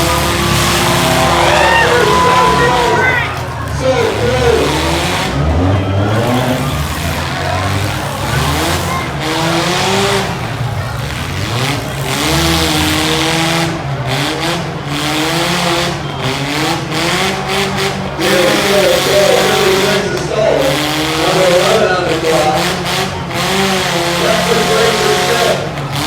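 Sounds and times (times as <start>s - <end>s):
car engines revving: 0.0s - 26.0s
tires squealing: 0.0s - 26.0s.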